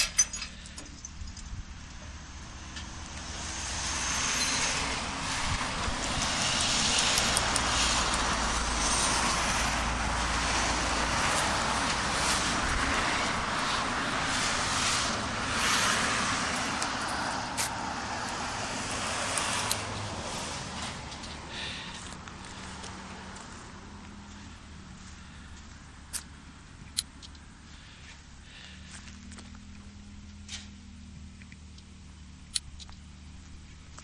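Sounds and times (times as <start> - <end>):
sharp metal clanks: 0.0 - 1.4, 4.1 - 4.8
heavy vehicle engine rumbling: 0.0 - 34.0.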